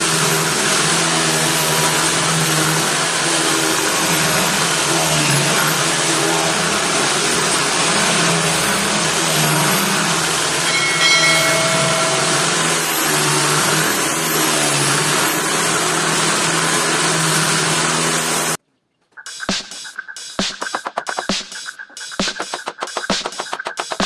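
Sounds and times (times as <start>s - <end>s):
high whine: 10.5s - 13.5s.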